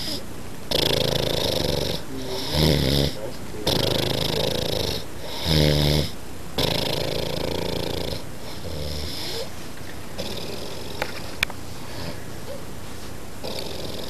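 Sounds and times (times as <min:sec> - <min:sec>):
man snoring: 0:00.0 - 0:09.5, 0:10.2 - 0:11.2, 0:11.9 - 0:12.6, 0:13.4 - 0:14.0.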